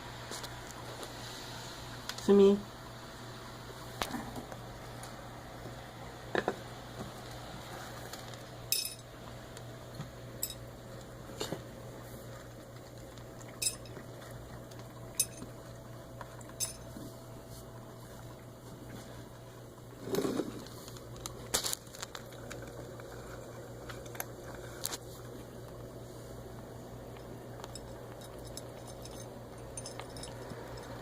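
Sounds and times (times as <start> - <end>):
pet eating clinking bowl: 8.7 - 9.1, 10.4 - 10.7, 12.8 - 17.1, 22.3 - 24.7, 27.1 - 31.0.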